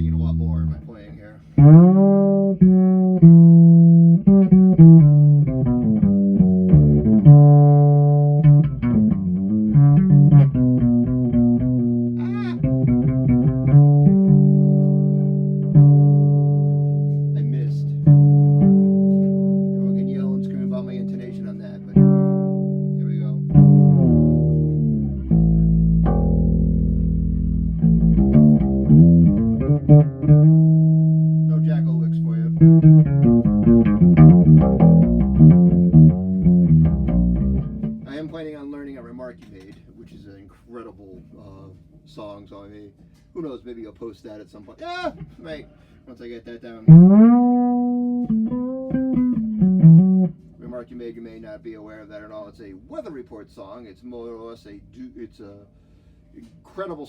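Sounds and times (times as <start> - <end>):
fretless bass plucked notes: 0.0 - 0.9, 1.5 - 39.7, 46.8 - 51.5.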